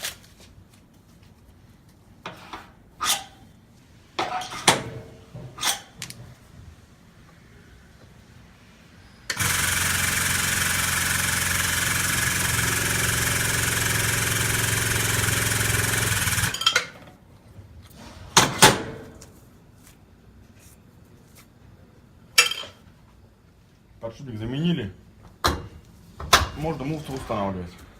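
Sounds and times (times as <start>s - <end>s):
machine motor humming and hissing: 9.3s - 16.5s.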